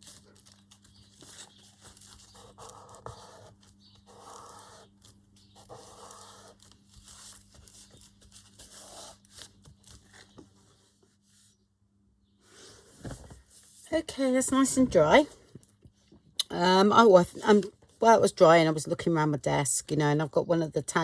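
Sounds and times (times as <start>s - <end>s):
paper rustling and scraping: 0.0s - 11.6s
low electrical hum: 0.0s - 21.0s.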